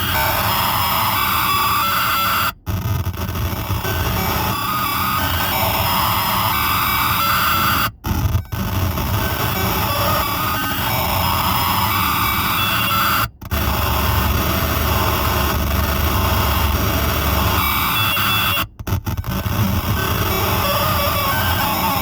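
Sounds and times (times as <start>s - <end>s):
harsh static-like electronic noise: 0.0s - 22.0s.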